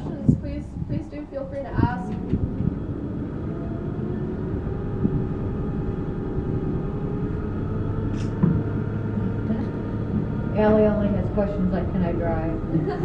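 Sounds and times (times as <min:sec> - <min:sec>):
boat motor rumbling with whine: 0:00.0 - 0:13.0.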